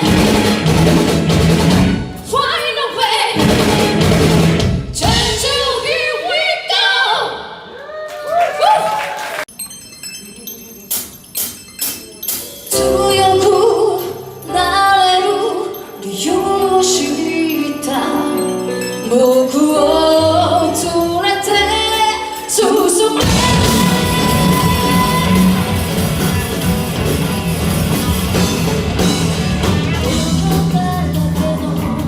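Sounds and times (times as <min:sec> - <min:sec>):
live rock band: 0:00.0 - 0:02.4, 0:03.0 - 0:05.8, 0:20.4 - 0:32.0
person singing: 0:12.7 - 0:26.6, 0:29.6 - 0:32.0.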